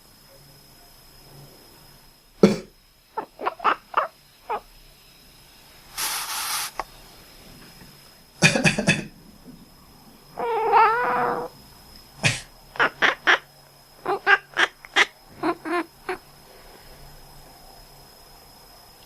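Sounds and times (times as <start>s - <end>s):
person coughing: 8.4s - 9.1s
cat calling: 10.4s - 11.5s, 12.8s - 13.4s, 14.0s - 16.2s.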